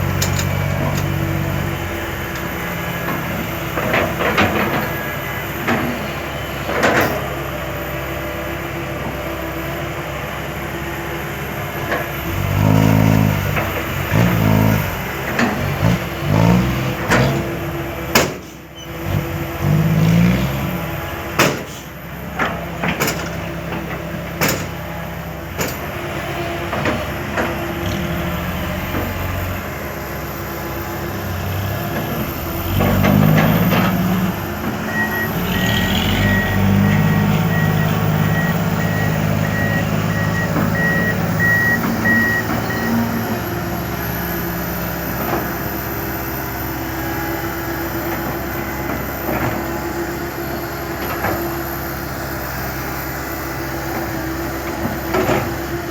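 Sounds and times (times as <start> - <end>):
diesel machinery engine: 0.0 - 55.9
reversing alarm beeping: 33.3 - 43.5.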